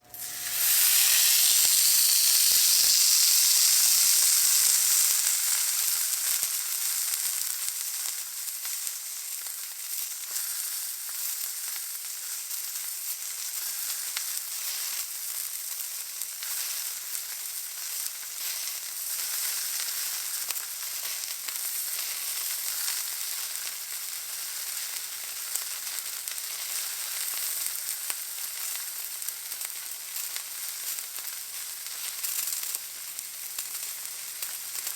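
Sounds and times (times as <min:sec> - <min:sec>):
steak sizzling in a pan: 0:00.0 - 0:34.9.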